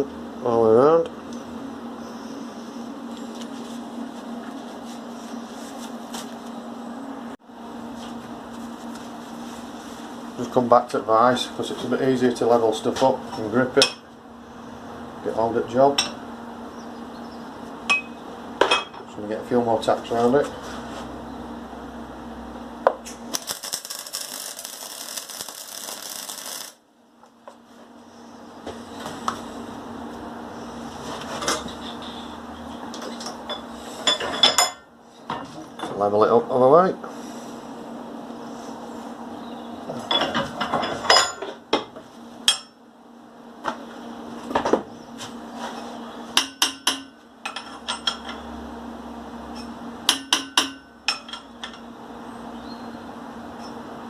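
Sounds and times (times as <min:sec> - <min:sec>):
steady low hum: 0:00.0 - 0:54.0
arc welder crackling: 0:22.9 - 0:27.4.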